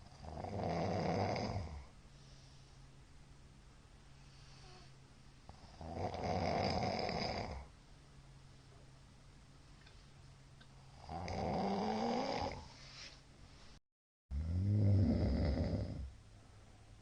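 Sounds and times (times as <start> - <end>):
faint low hum: 0.0 - 17.0
man snoring: 0.2 - 1.9, 5.6 - 7.7, 10.9 - 12.8, 14.3 - 16.1.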